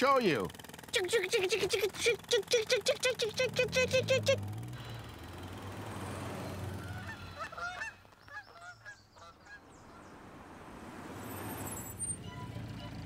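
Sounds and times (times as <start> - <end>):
birds honking and chirping: 6.4 - 10.3.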